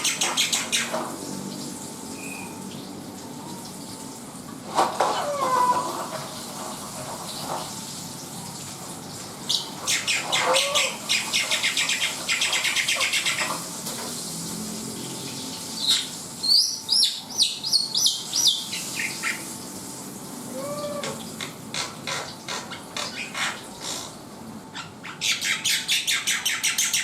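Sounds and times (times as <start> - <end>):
sharp whistled bird notes: 2.2 - 2.6
starling singing: 9.5 - 13.5, 15.8 - 19.4, 20.5 - 21.2.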